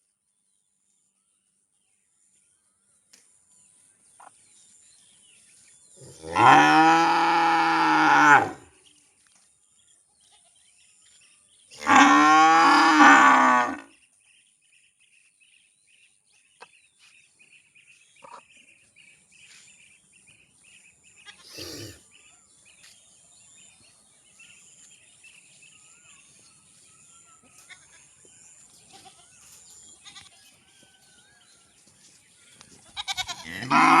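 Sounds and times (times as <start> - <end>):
cow mooing: 6.2 - 8.6, 11.8 - 13.8, 33.4 - 34.0.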